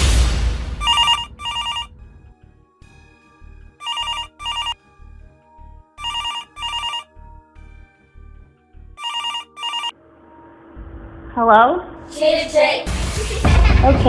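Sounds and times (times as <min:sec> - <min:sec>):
background music with low beat: 0:00.0 - 0:09.0, 0:12.9 - 0:14.0
telephone ringing: 0:00.8 - 0:01.9, 0:03.8 - 0:04.8, 0:06.0 - 0:07.2, 0:09.0 - 0:10.0.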